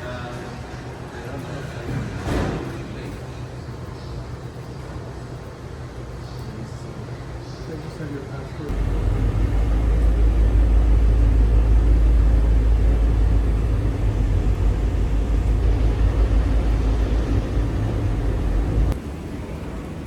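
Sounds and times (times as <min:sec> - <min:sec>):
vehicle rumble: 0:08.7 - 0:19.0.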